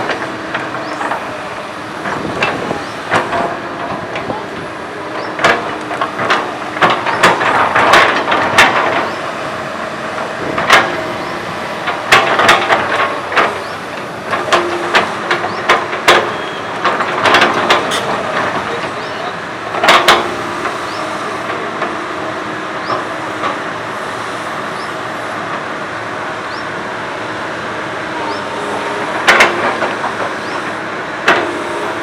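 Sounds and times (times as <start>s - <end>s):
diesel engine running: 0.0s - 32.0s
sharp metal clanks and knocks: 14.3s - 19.1s, 19.7s - 21.0s.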